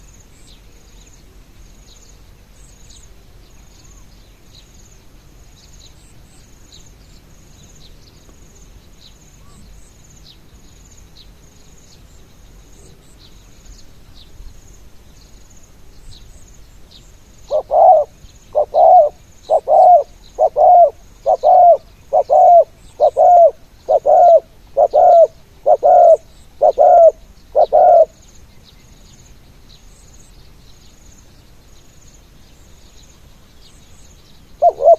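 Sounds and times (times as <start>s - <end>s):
faint high insect chirping: 0.0s - 34.9s
dove cooing: 17.5s - 28.2s, 34.6s - 34.9s.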